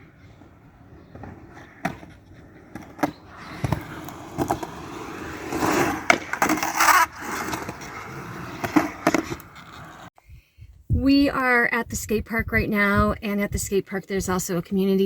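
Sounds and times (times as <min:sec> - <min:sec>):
skateboard rolling on concrete: 0:00.0 - 0:10.1
skateboard clacking on ground: 0:00.1 - 0:10.1.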